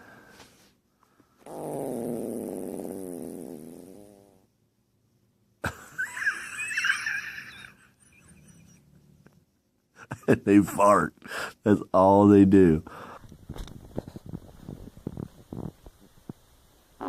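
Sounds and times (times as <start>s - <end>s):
long wavering fart: 1.4s - 4.4s.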